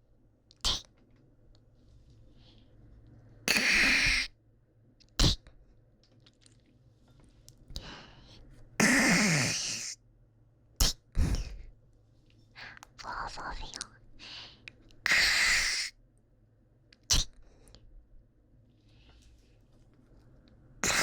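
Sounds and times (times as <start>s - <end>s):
person spitting: 0.6s - 0.9s, 3.5s - 4.3s, 5.2s - 5.4s, 8.8s - 10.0s, 10.8s - 11.4s, 15.1s - 15.9s, 17.1s - 17.4s
person hawking phlegm: 3.5s - 4.3s, 8.8s - 10.0s, 15.1s - 15.9s
person breathing: 7.8s - 8.5s, 14.2s - 15.9s.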